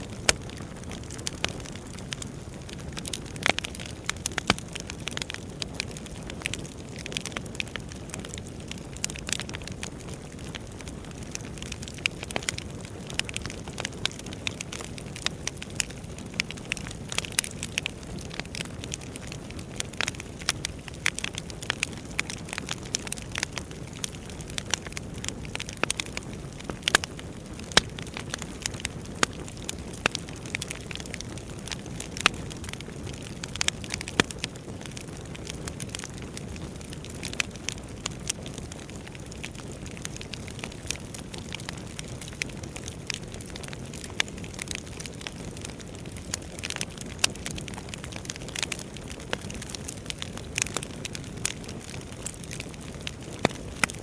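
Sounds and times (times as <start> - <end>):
low rumble of burning logs: 0.0 - 54.0
wood fire crackling: 0.0 - 54.0.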